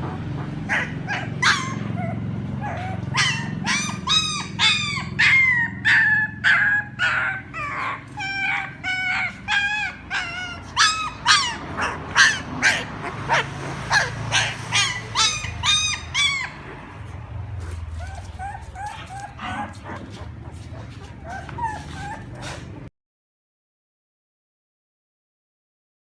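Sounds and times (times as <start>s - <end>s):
puppies whimpering: 0.1s - 22.9s.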